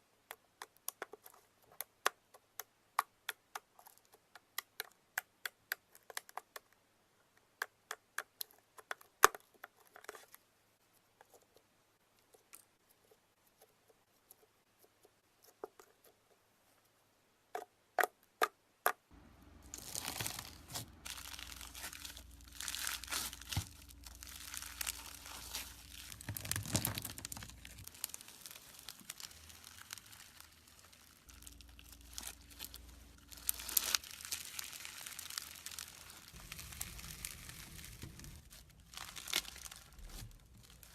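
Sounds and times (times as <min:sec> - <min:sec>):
slime crinkling and crackling: 0:19.4 - 0:40.9.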